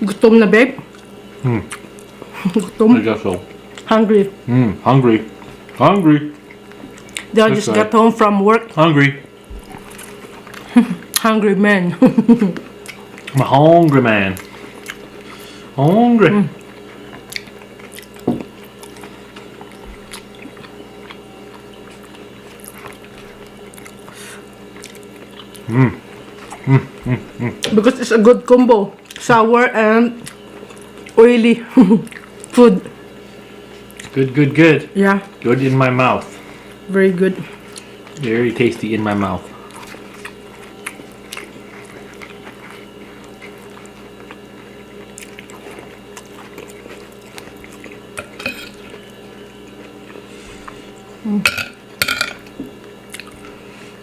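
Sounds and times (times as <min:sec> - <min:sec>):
chewing and eating: 0:00.0 - 0:08.0, 0:09.4 - 0:11.3, 0:12.0 - 0:28.0, 0:29.0 - 0:29.3, 0:30.1 - 0:34.5, 0:35.2 - 0:54.0
faint steady hum: 0:00.0 - 0:54.0
wet chewing and lip smacks: 0:06.4 - 0:07.3, 0:12.6 - 0:15.2, 0:16.6 - 0:25.7, 0:33.8 - 0:34.2, 0:39.6 - 0:48.1, 0:53.0 - 0:53.5.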